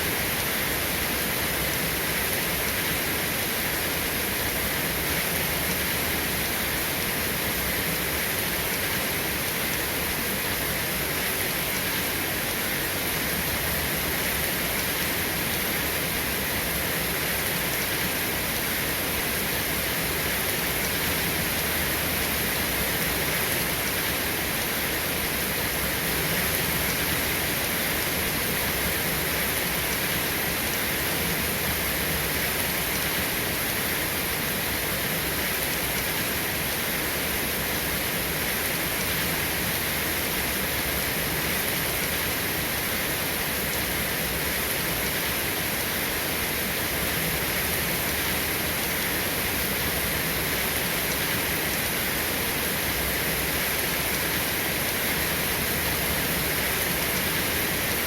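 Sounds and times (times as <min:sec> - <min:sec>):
heavy rain: 0:00.0 - 0:58.0.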